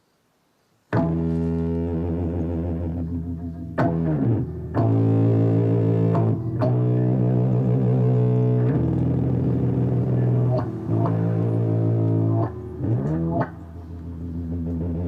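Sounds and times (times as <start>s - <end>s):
low string instrument notes: 0.9s - 15.0s.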